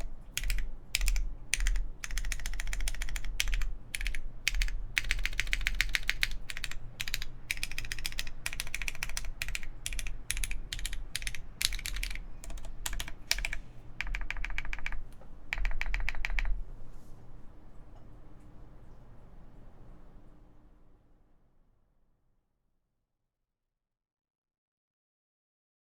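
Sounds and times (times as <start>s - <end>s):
mechanical keyboard typing: 0.0s - 16.6s.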